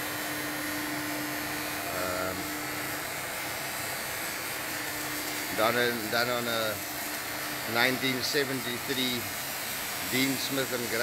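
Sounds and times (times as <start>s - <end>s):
lathe whirring: 0.0s - 11.0s.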